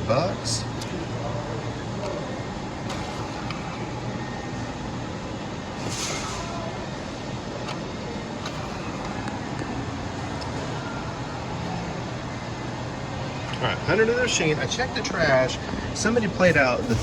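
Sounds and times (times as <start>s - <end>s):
steady background hum: 0.0s - 17.0s
bill acceptor whirring: 0.2s - 12.4s, 16.2s - 17.0s.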